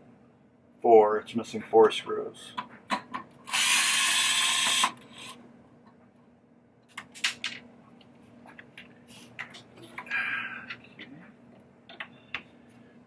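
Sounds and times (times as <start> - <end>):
power screwdriver running: 3.5 - 5.4.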